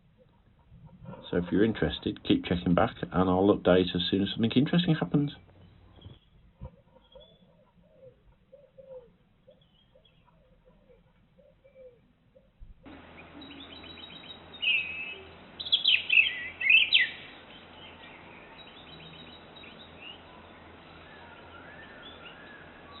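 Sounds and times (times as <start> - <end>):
small birds chirping: 0.0 - 23.0
bird warble: 12.9 - 23.0
steady hiss: 12.9 - 23.0.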